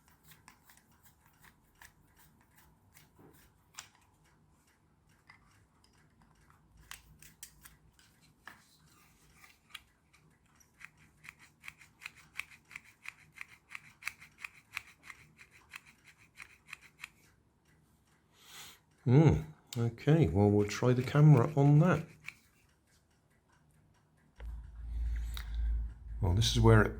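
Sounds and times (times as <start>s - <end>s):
scrapes and clicks on plastic: 5.2s - 17.3s.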